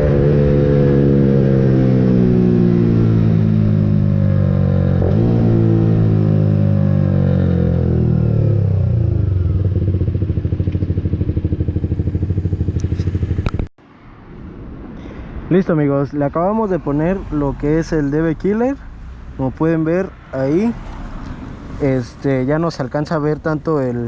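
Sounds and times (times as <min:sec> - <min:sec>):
motorcycle engine idling: 0:09.0 - 0:13.7.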